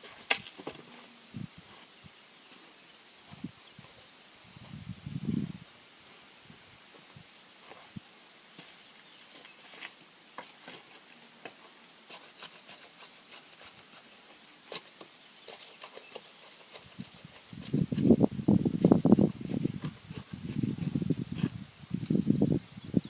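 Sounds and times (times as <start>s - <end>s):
pulsing insect chirp: 17.1s - 19.0s.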